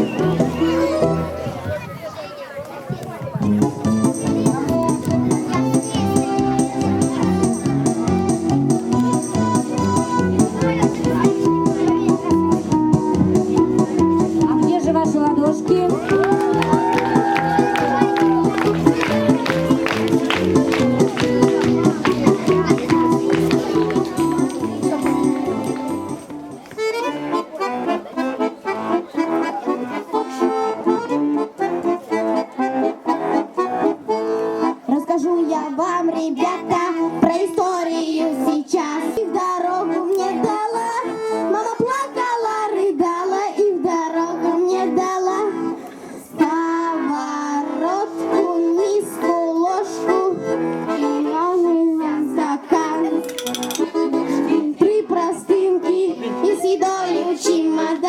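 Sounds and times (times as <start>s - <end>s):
accordion playing a tune: 0.0s - 1.6s, 3.4s - 58.0s
children singing: 54.8s - 58.0s.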